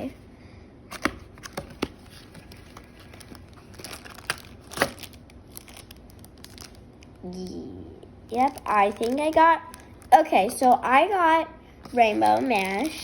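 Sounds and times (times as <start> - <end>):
packaging crinkling and tearing: 1.0 - 7.2, 8.3 - 10.2, 11.9 - 13.0.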